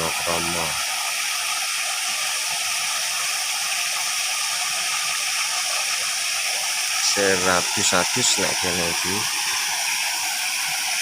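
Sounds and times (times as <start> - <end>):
waterfall rushing: 6.8 - 11.0.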